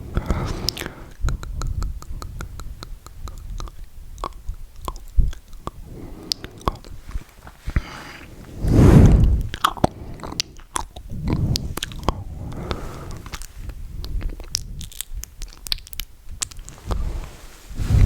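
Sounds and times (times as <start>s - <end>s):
wet mouth clicks and smacks: 0.1s - 7.8s, 9.5s - 16.7s
low swell: 8.4s - 9.7s.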